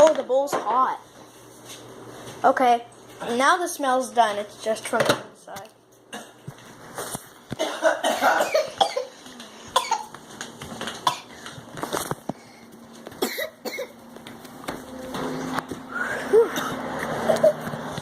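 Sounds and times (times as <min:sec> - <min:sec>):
person coughing: 0:07.6 - 0:10.1, 0:11.0 - 0:11.3, 0:13.2 - 0:14.0, 0:16.1 - 0:17.5.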